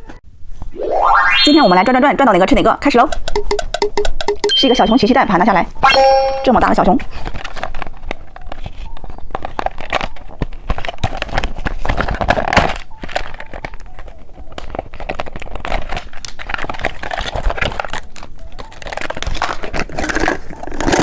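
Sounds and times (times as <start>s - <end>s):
plastic packaging crinkling: 7.1s - 21.0s.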